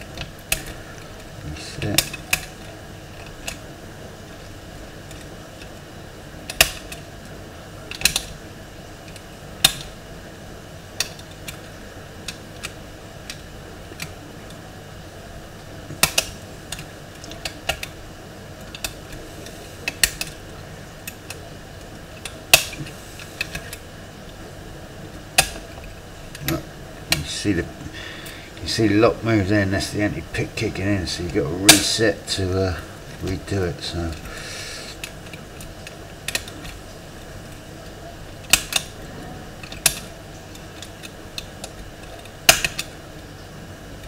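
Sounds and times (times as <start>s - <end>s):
lock picks clicking in lock: 38.4s - 38.9s, 39.6s - 42.9s.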